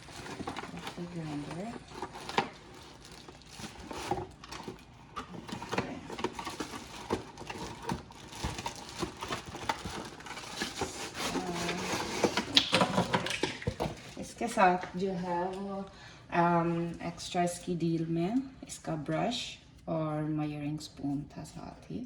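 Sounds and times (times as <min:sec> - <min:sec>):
plastic packaging rustling: 0:00.0 - 0:14.3.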